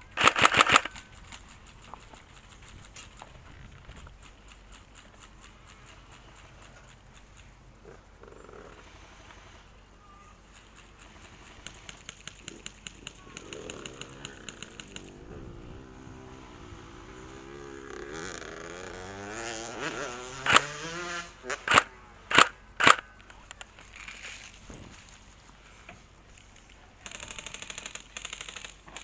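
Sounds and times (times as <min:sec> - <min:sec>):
motorcycle engine revving: 0:00.0 - 0:01.0, 0:13.3 - 0:23.1
quick clicks: 0:00.0 - 0:08.0, 0:20.4 - 0:20.9, 0:21.5 - 0:24.2.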